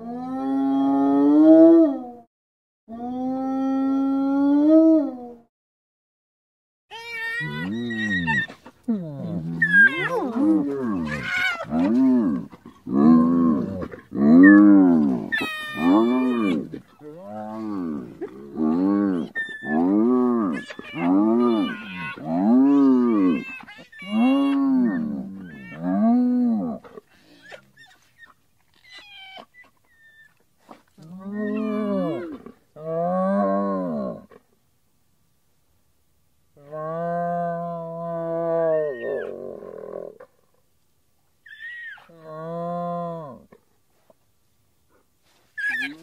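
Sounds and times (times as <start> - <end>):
hyena calling: 6.9 - 30.4, 45.6 - 46.0.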